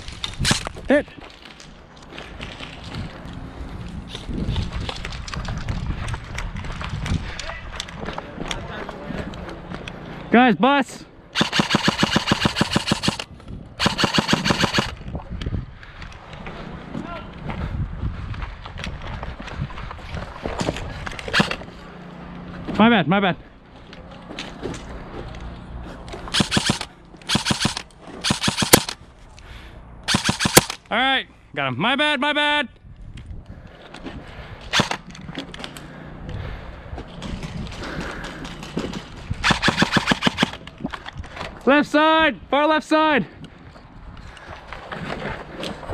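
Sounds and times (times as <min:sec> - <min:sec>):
airsoft gun firing full auto: 0:11.4 - 0:15.0, 0:21.3 - 0:21.6, 0:26.4 - 0:29.0, 0:30.1 - 0:30.8, 0:34.7 - 0:35.0, 0:39.4 - 0:40.6.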